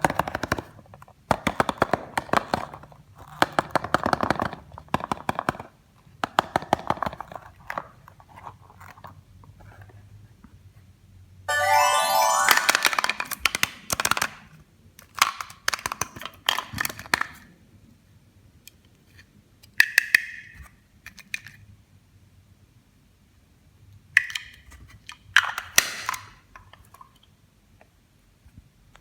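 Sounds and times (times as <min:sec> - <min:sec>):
short musical sound: 0:11.5 - 0:13.2.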